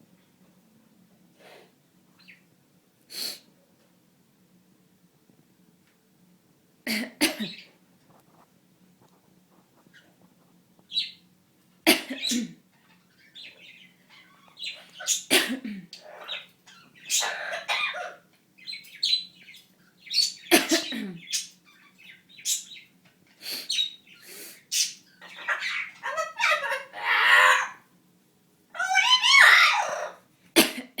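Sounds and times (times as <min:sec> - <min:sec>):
parrot talking in human-like voice: 0:25.4 - 0:27.8, 0:28.8 - 0:30.2.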